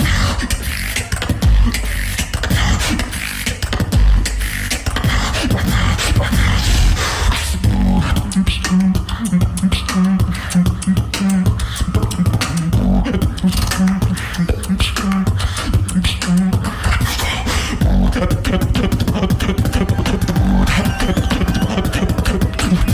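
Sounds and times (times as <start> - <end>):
beatbox vocal percussion: 0.0 - 22.9
low pulsing bass note: 17.8 - 21.5.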